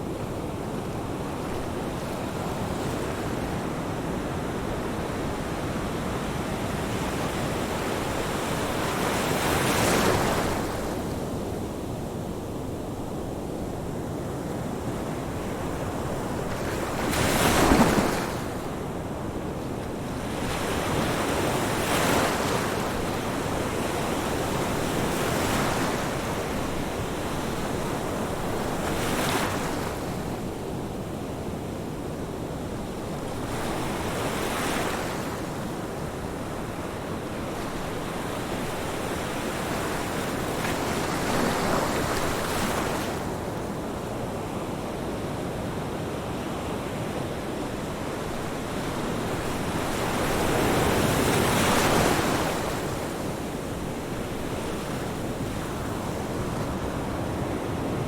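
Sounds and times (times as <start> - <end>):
waves breaking on shore: 12.5 - 45.0, 46.0 - 58.0.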